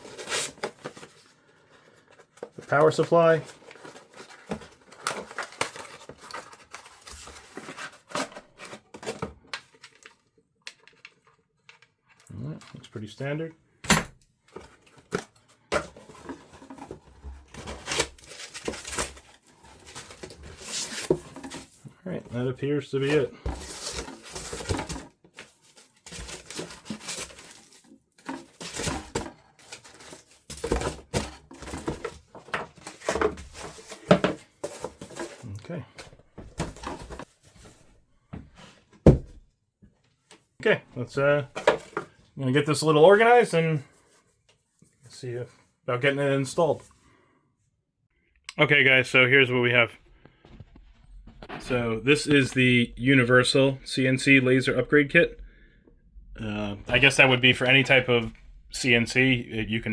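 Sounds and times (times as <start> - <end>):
packaging rustling and crinkling: 2.0 - 11.9, 14.6 - 21.9, 23.0 - 37.9.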